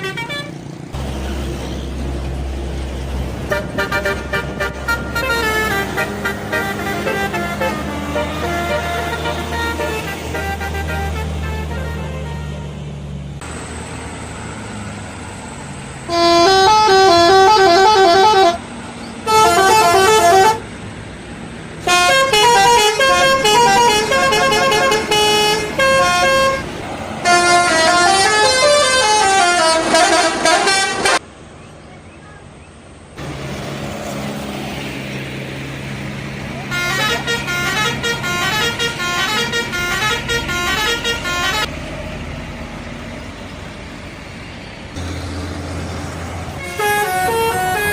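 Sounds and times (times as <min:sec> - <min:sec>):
musical air horn melody: 0:03.5 - 0:12.6, 0:16.1 - 0:18.6, 0:19.2 - 0:20.6, 0:21.8 - 0:31.2, 0:36.7 - 0:41.7, 0:46.6 - 0:47.9.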